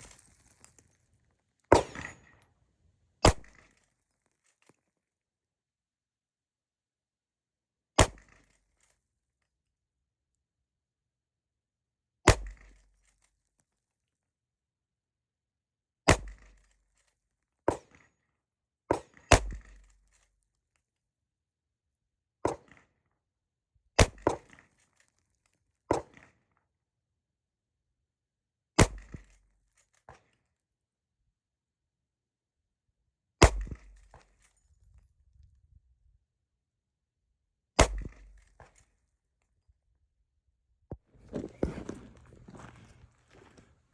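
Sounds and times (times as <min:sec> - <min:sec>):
rifle shots cracking: 0:01.7 - 0:02.2.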